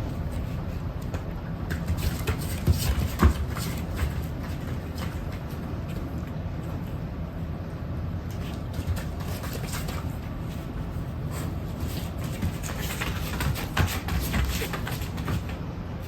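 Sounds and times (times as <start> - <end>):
dog paws clicking and scuffing: 0.0 - 7.0, 8.2 - 15.6.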